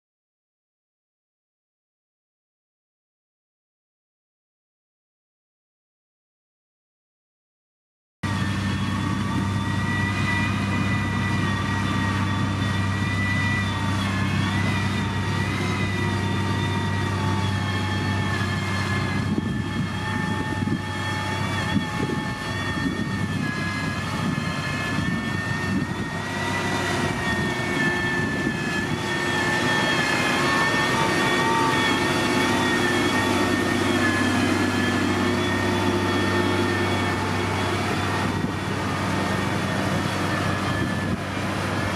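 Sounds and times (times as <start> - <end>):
high engine whine: 8.2 - 41.9
heavy machinery engine humming: 8.3 - 41.9.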